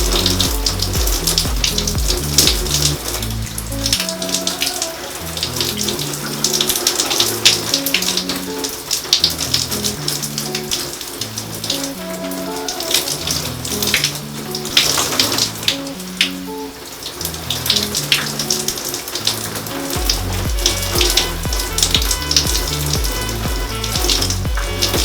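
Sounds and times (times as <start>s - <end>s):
deep pulsing bass line: 0.0s - 4.0s, 19.4s - 25.0s
electronic music: 0.0s - 25.0s.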